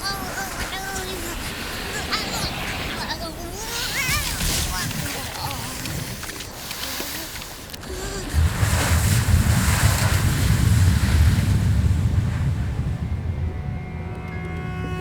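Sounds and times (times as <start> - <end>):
low rumble of surging water: 0.0 - 15.0
sea waves: 0.0 - 15.0
wind rushing: 8.1 - 15.0.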